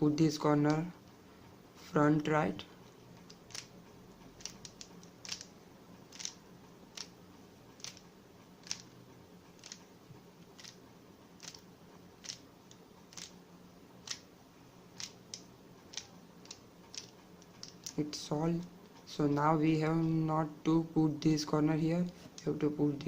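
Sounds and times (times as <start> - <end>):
puzzle cube clicks: 4.4 - 5.5, 6.1 - 7.1, 8.6 - 8.9, 10.6 - 10.8, 11.4 - 11.6, 12.2 - 12.4.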